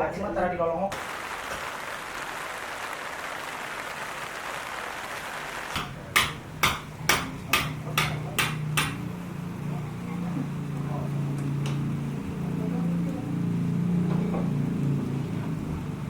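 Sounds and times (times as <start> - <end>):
steady hiss: 0.9 - 7.2.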